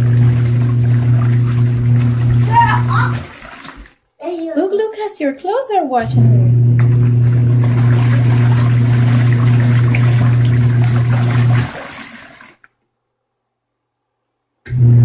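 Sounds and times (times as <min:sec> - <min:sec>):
washing machine motor humming: 0:00.0 - 0:04.8, 0:05.9 - 0:12.7, 0:14.7 - 0:15.0
water and clothes churning: 0:00.0 - 0:04.9, 0:06.8 - 0:12.7.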